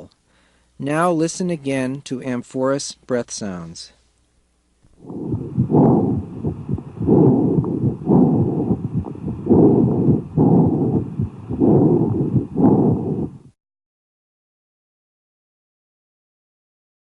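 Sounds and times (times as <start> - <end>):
breath sounds through stethoscope: 5.0 - 13.6
heart tones: 5.0 - 13.6.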